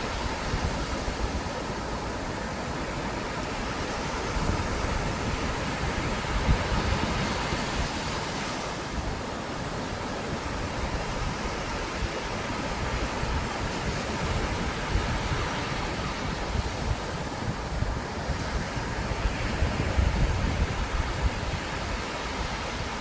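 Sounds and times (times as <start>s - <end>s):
wind buffeting microphone: 0.0s - 23.0s.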